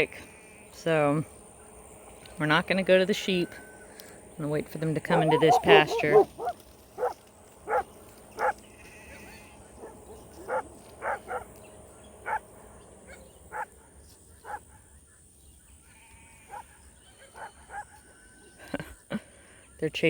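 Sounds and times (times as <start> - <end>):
puppies yipping: 5.1 - 8.6, 9.2 - 11.6, 12.2 - 12.5, 17.4 - 18.0.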